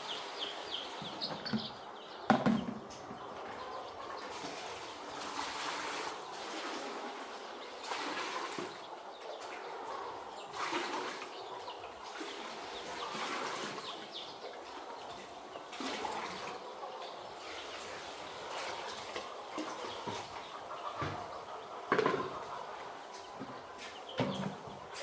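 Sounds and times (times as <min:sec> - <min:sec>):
water pouring and splashing: 0:04.3 - 0:09.6, 0:10.5 - 0:11.4, 0:12.0 - 0:16.7, 0:17.4 - 0:20.5.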